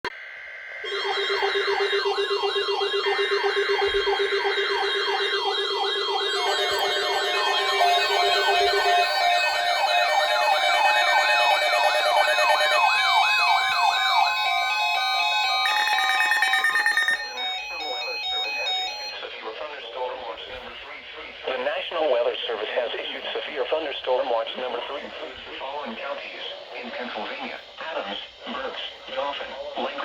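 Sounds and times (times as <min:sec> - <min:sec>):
high siren warble: 0:00.1 - 0:19.2
steady pulsing tone: 0:00.8 - 0:17.7
electronic sirens yelping: 0:00.8 - 0:19.2.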